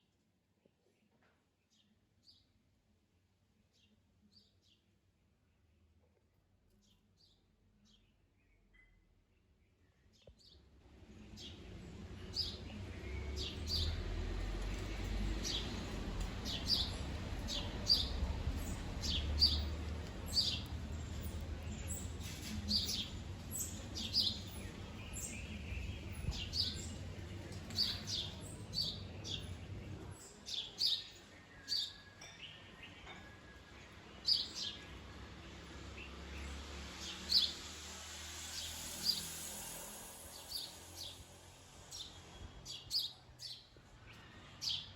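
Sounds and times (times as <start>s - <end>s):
small birds chirping: 6.7s - 37.9s.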